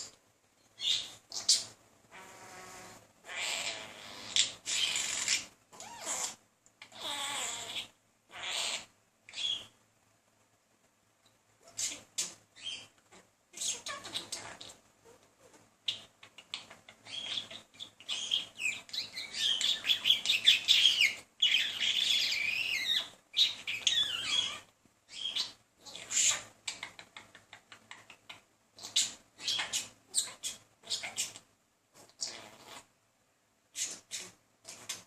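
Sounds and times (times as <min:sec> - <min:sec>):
budgerigar warbling and chirping: 0:00.8 - 0:09.7, 0:11.7 - 0:12.9, 0:15.9 - 0:26.9, 0:28.8 - 0:31.4.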